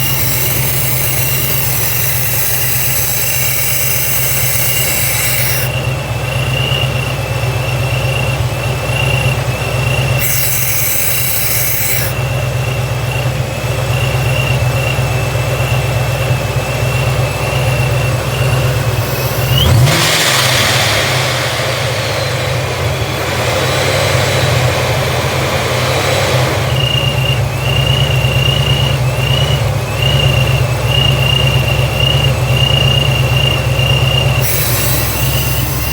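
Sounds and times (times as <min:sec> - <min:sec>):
high-pitched vacuum leak whistle: 0:00.0 - 0:07.1, 0:09.0 - 0:12.4, 0:17.0 - 0:22.9, 0:26.7 - 0:35.9
engine idling: 0:00.0 - 0:35.9.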